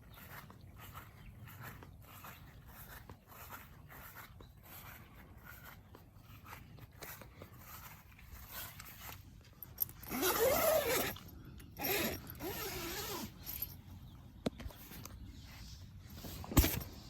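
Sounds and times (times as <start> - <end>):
zipper pulled: 8.4 - 9.2, 9.8 - 13.7.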